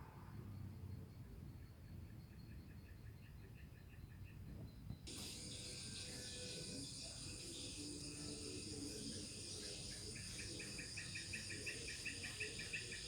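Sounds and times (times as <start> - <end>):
crickets trilling: 5.1 - 13.0
rhythmic insect chirping: 5.1 - 13.0.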